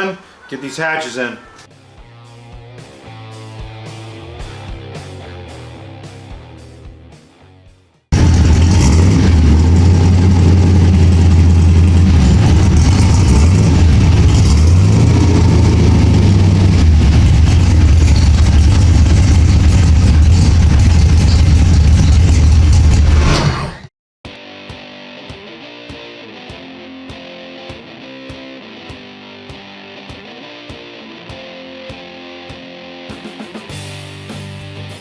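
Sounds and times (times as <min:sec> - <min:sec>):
pickup engine running: 0:08.1 - 0:23.3.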